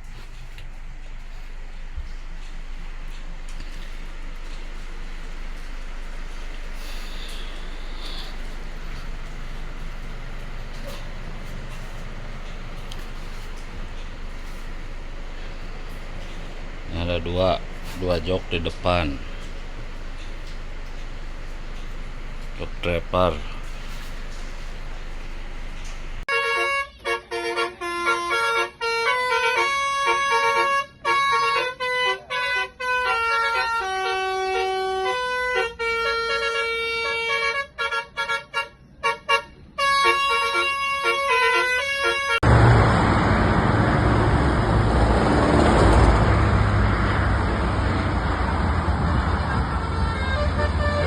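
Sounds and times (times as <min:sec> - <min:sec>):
multi-tone bus horn tune: 0:00.0 - 0:24.7, 0:25.8 - 0:51.0
vehicle rumble with low hum: 0:00.0 - 0:26.3, 0:39.5 - 0:51.0.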